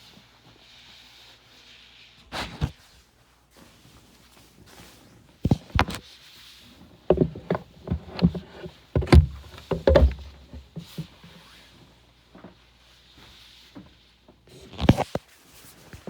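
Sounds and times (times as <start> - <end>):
irregular knocks and thumps: 7.1 - 11.2.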